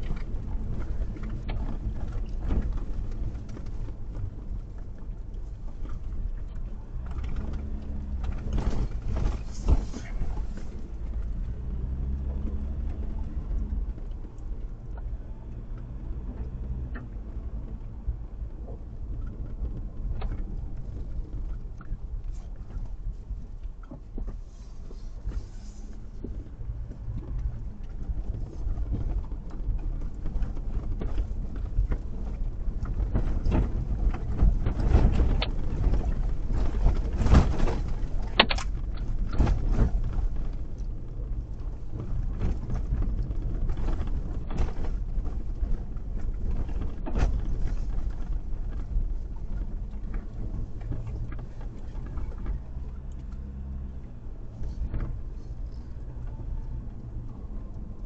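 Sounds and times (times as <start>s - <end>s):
vehicle rumble: 0.0s - 58.0s
knocks and rattles: 23.8s - 53.6s.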